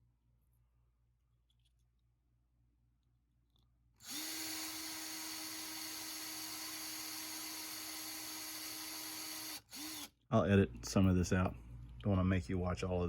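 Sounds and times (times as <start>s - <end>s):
electric drill running: 4.0s - 10.2s.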